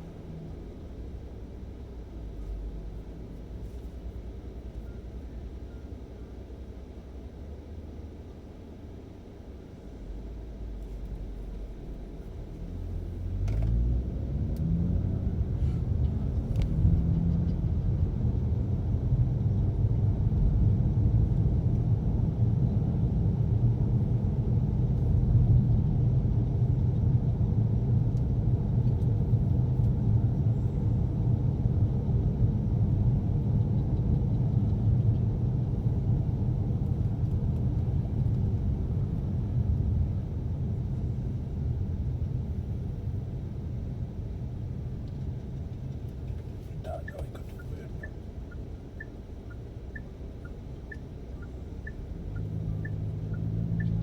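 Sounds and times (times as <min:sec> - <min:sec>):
road noise: 0:00.0 - 0:54.0
car engine accelerating: 0:10.8 - 0:54.0.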